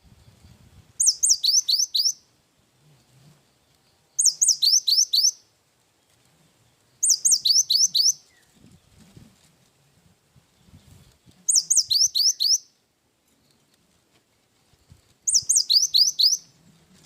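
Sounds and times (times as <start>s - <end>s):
bird whistling song: 1.0s - 2.3s, 4.2s - 5.5s, 7.0s - 8.6s, 11.5s - 12.8s, 15.2s - 16.5s.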